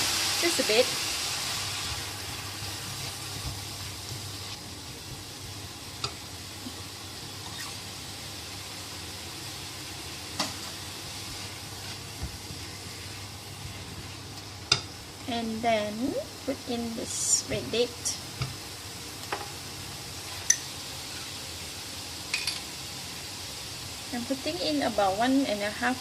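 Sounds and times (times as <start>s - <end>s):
steam hissing: 0.0s - 5.9s
stir-fry sizzling in a hot pan: 0.0s - 26.0s.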